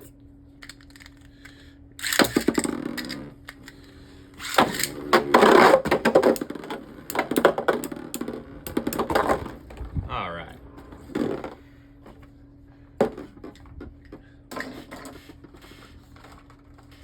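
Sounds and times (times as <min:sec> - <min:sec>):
spinning tops clashing: 0:02.0 - 0:03.8, 0:04.4 - 0:09.1.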